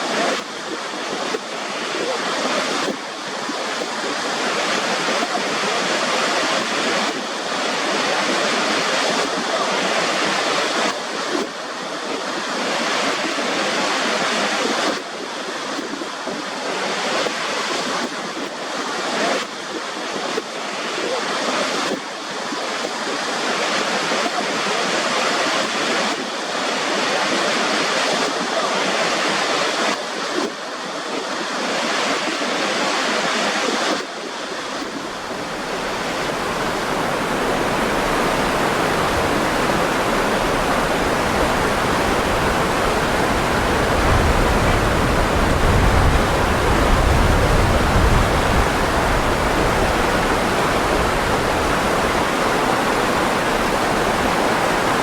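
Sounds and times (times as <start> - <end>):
rushing water: 0.0 - 55.0.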